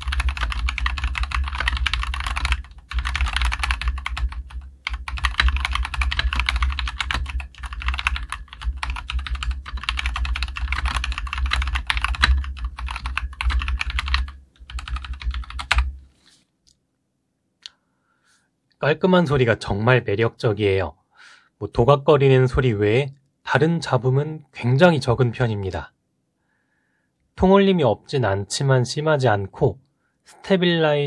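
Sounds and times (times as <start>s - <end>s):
fast mechanical keyboard typing: 0.0s - 16.0s.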